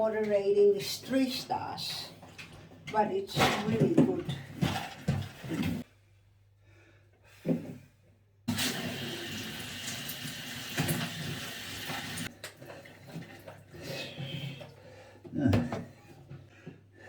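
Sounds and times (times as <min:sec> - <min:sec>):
toilet flushing: 0:00.8 - 0:05.9, 0:08.5 - 0:15.0.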